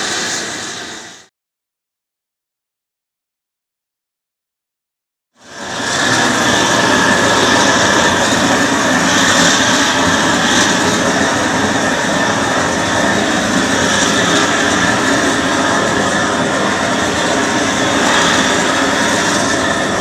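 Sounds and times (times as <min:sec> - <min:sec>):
gas torch rushing flame: 0:00.0 - 0:01.3, 0:05.4 - 0:20.0.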